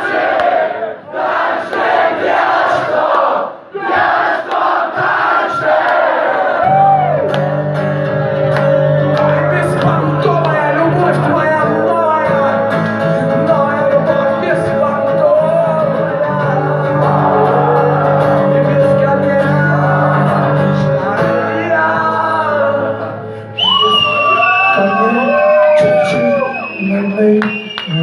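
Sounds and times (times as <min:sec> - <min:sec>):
audience shouting: 0:00.0 - 0:09.2, 0:16.5 - 0:18.6
audience cheering: 0:03.8 - 0:10.0, 0:16.3 - 0:18.8, 0:23.6 - 0:28.0
man singing: 0:07.3 - 0:28.0
shrill whistles: 0:23.5 - 0:28.0.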